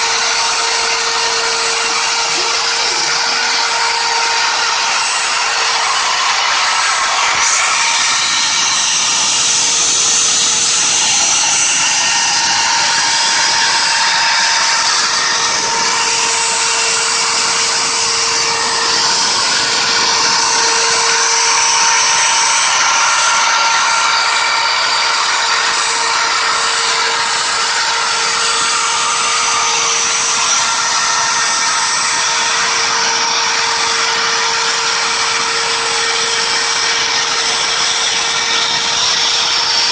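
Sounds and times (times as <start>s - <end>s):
router spindle whine: 0.0s - 39.9s.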